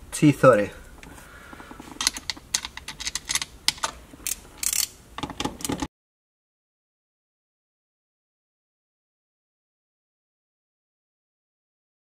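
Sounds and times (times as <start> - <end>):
metallic clicks from hand tools: 2.0 - 5.9.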